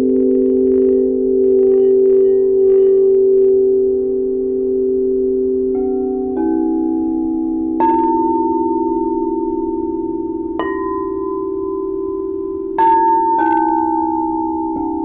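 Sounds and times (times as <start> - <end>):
singing bowls ringing: 0.0 - 15.0
singing bowl strikes: 5.7 - 15.0.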